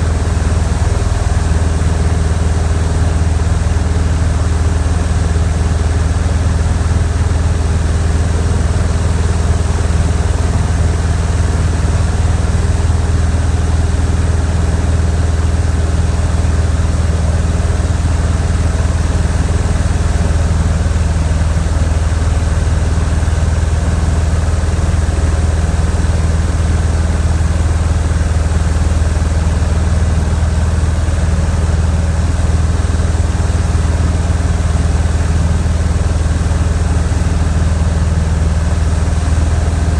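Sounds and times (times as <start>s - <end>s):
light airplane engine droning: 0.0s - 39.9s.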